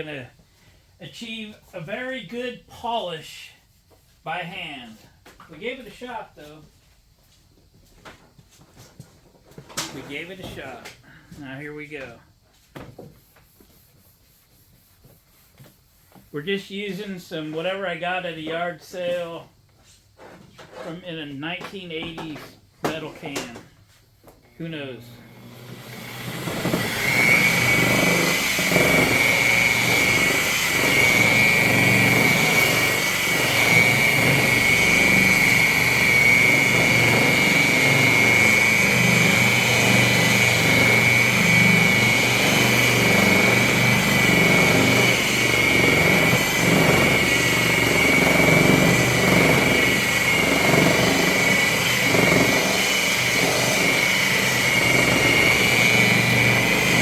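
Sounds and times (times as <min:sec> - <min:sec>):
electric buffer whining: 0:22.9 - 0:57.0.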